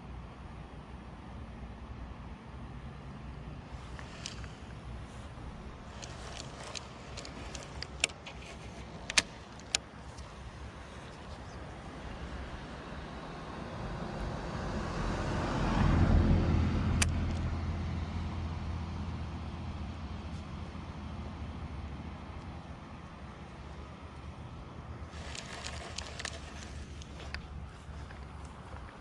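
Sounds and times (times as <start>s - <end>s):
sharp clicks: 3.9s - 4.9s, 5.8s - 10.3s, 25.0s - 29.0s
motor vehicle passing by: 10.3s - 23.0s.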